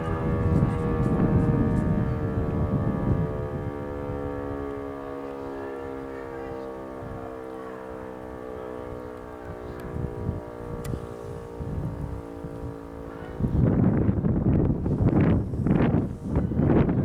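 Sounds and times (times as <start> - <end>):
low wind rumble: 0.0 - 17.0
motor siren steady tone: 0.0 - 17.0.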